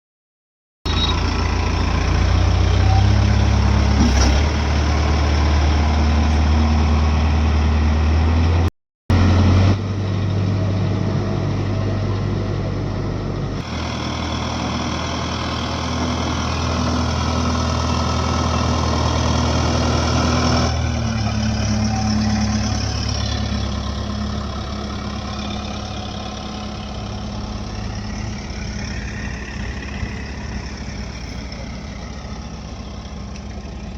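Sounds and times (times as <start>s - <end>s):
diesel engine of heavy machinery: 0.9s - 33.9s.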